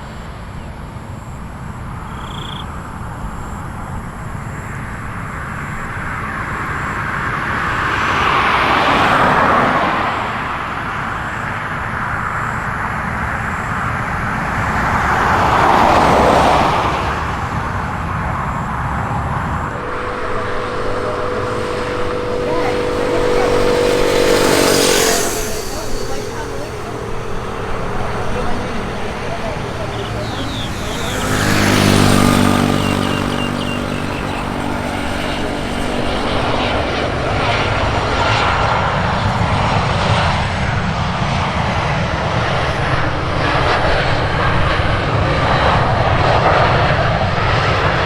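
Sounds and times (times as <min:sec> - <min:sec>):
road vehicles passing by: 0:02.1 - 0:11.4, 0:12.1 - 0:48.0
engine hum: 0:19.5 - 0:48.0.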